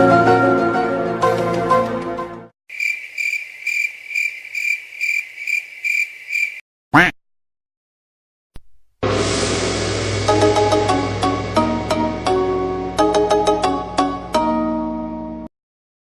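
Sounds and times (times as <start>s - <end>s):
cricket chirping: 2.7s - 6.6s
music clip: 9.0s - 15.5s.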